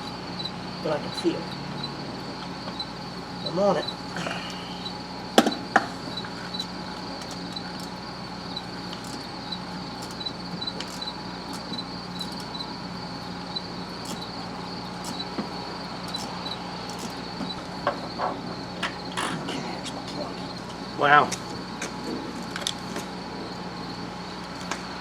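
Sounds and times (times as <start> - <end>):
high pulsing chirp: 0.0 - 25.0
steady low hum: 0.0 - 25.0
sharp metal clicks: 5.2 - 18.1.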